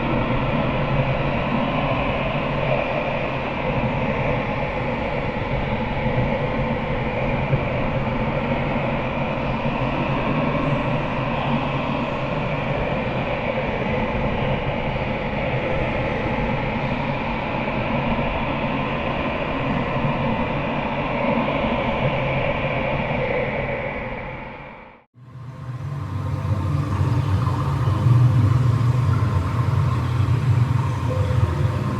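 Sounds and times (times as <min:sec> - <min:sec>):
constant hum: 0:25.2 - 0:31.9
steady mechanical rumble: 0:25.2 - 0:31.9.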